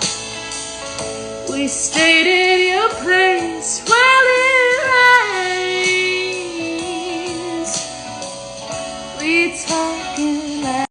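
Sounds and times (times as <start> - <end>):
person singing: 1.5 - 8.1, 9.2 - 10.9.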